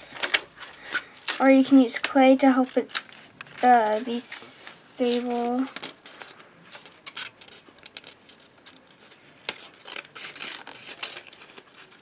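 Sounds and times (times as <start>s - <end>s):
paper rustling: 0.1s - 12.0s.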